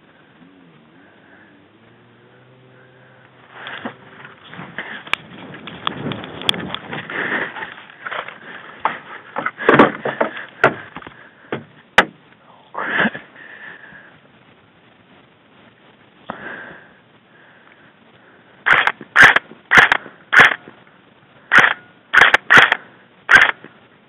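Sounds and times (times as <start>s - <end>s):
rustling and scuffing: 3.4s - 11.8s
sharp clicks: 18.7s - 20.7s, 21.5s - 23.7s.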